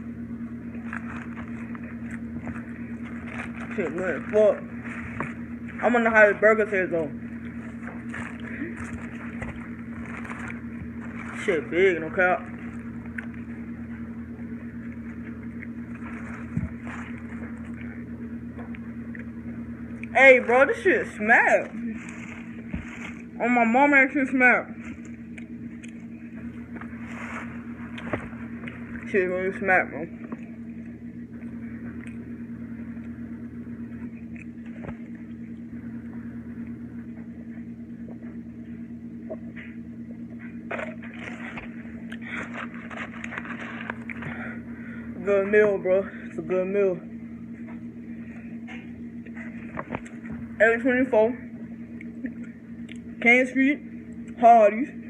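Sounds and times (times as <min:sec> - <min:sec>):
pulsing motor hum: 0:00.0 - 0:55.0
person eating: 0:00.7 - 0:05.8, 0:07.3 - 0:11.7, 0:12.4 - 0:13.6, 0:14.9 - 0:18.1, 0:21.7 - 0:23.4, 0:24.8 - 0:29.1, 0:40.7 - 0:45.1.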